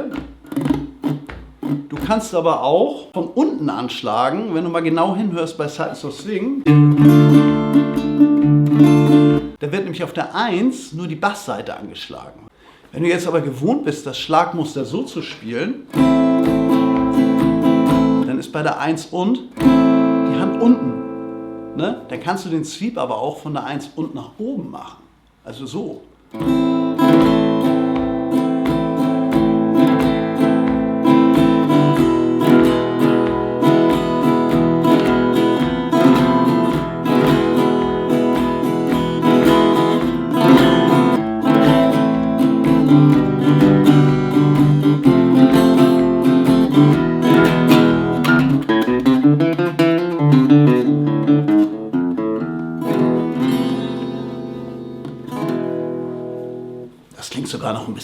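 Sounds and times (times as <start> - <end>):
acoustic guitar strumming: 0.0 - 2.6, 6.6 - 9.6, 15.8 - 18.5, 19.5 - 22.3, 26.3 - 57.1.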